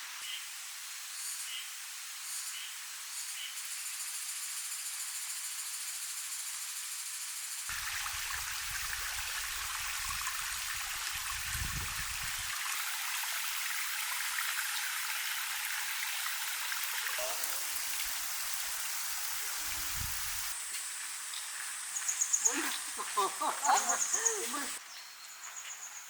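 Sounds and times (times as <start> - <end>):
mountain stream running: 7.7 - 20.6, 22.4 - 24.8
wind rumbling on microphone: 8.0 - 12.5, 19.6 - 20.5.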